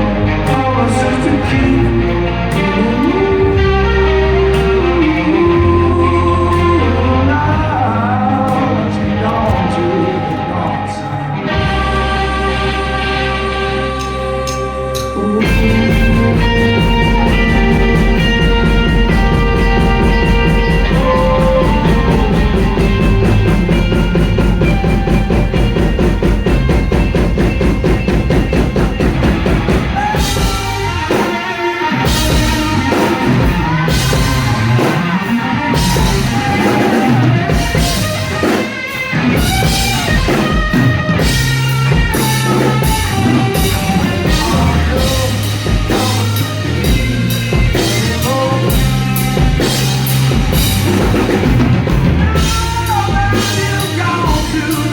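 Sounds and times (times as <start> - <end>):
distorted guitar and bass chord: 0.0 - 54.9
lead guitar bending notes: 0.0 - 54.9
rock band playing: 0.0 - 54.9
drum kit hard hits: 15.4 - 54.9.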